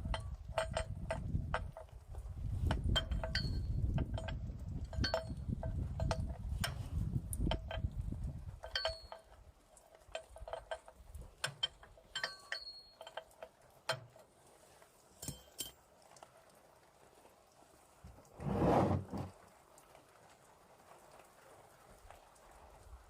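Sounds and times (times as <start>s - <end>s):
light metallic clinks: 0.0s - 2.0s, 2.6s - 14.3s, 15.1s - 15.9s.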